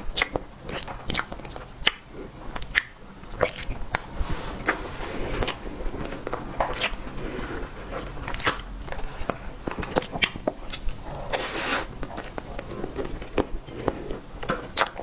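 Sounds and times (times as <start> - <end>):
chewing with wet mouth clicks: 0.0 - 4.0, 6.2 - 7.0, 9.6 - 15.0.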